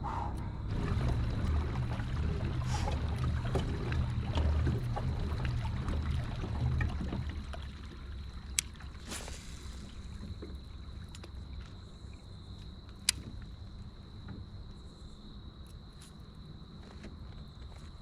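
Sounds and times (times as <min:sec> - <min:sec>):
low rumble: 0:00.0 - 0:08.4.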